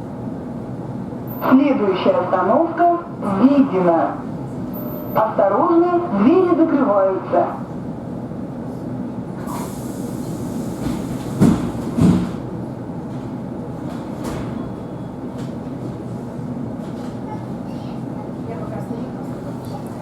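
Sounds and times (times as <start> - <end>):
train carriage rumble: 0.0 - 20.0
pneumatic door hiss: 9.4 - 11.7
train doors thumping shut: 9.4 - 12.5, 13.1 - 15.6.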